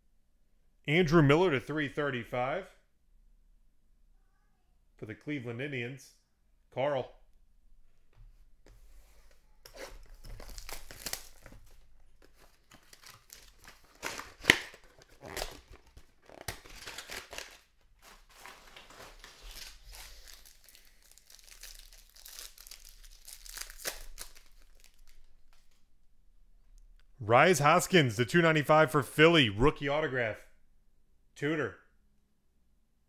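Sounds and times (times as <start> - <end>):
packaging torn and crinkled: 10.0 - 25.3.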